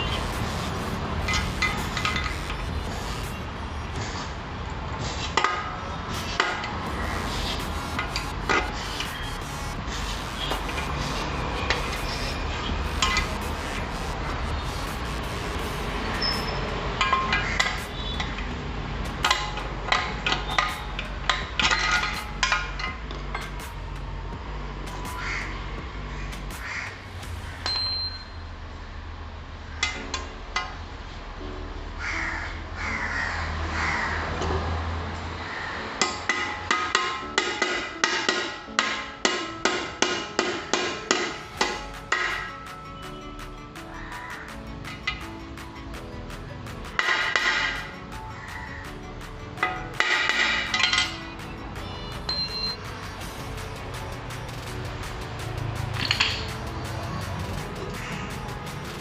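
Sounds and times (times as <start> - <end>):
hammer striking metal: 0.0 - 4.2, 5.4 - 24.1, 24.8 - 28.6, 36.0 - 59.0.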